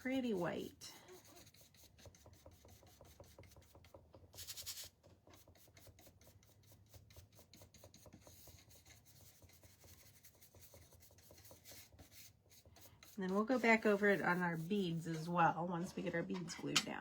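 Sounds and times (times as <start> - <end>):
rubbing strokes on wood: 5.4 - 16.1
louder rasping stroke: 11.2 - 16.2.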